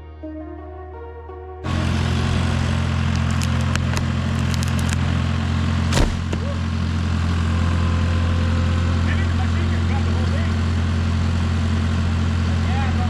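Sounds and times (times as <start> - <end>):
engine running steadily: 1.7 - 13.0
sharp knock: 5.9 - 6.6.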